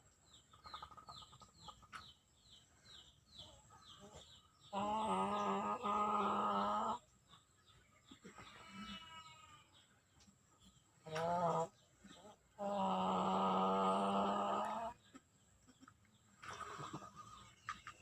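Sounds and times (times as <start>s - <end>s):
chicken drawn-out call: 12.6s - 15.0s.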